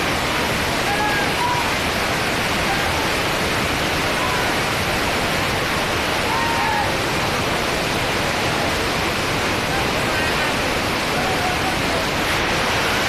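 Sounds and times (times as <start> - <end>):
rushing flood water: 0.0 - 13.0.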